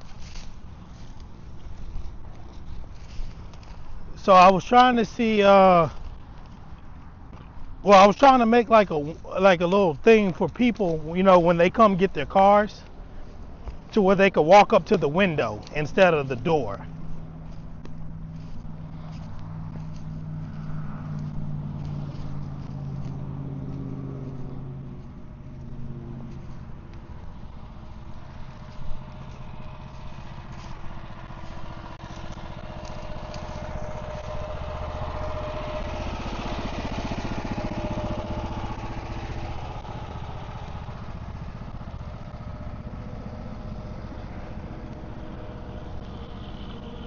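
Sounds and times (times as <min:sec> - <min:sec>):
motor engine running: 0:00.0 - 0:47.0
vehicle passing: 0:00.0 - 0:47.0.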